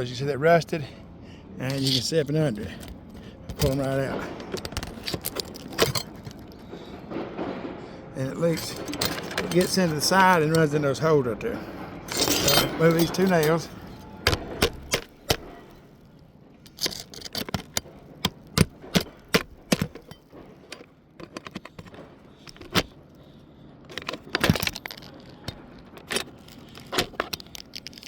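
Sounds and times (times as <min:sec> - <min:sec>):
nails pried from metal clicking: 0:02.7 - 0:06.6, 0:14.3 - 0:15.8, 0:16.7 - 0:22.9, 0:23.9 - 0:28.0.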